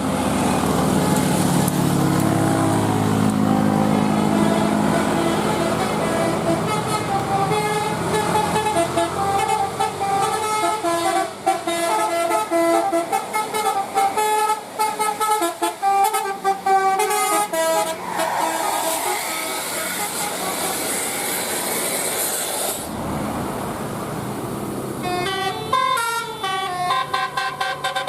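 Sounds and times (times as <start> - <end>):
bus multi-trumpet horn tune: 2.6 - 21.5, 25.0 - 28.0.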